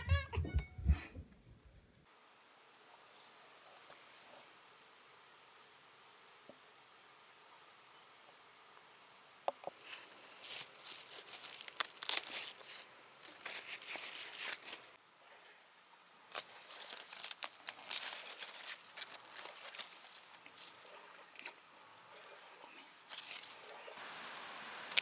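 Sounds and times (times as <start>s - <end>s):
crinkling and rustling: 9.5s - 15.0s, 16.3s - 25.0s.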